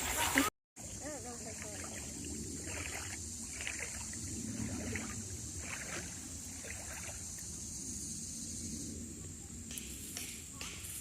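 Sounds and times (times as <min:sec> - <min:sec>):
water splashes: 0:00.0 - 0:07.6
water sloshing in a stream: 0:00.0 - 0:07.9
steady high hiss: 0:06.3 - 0:11.0.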